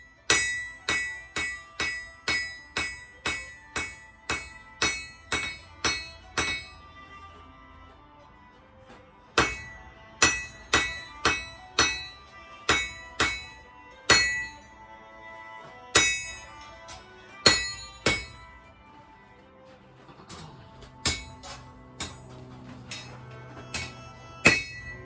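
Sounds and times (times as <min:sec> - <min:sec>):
hammer striking anvil with metallic ring: 0:00.0 - 0:07.0, 0:09.4 - 0:14.8, 0:16.0 - 0:18.8, 0:21.0 - 0:25.0.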